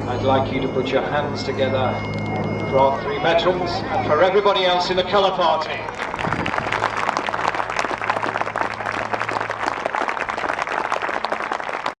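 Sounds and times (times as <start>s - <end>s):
crowd applauding: 5.6s - 12.0s.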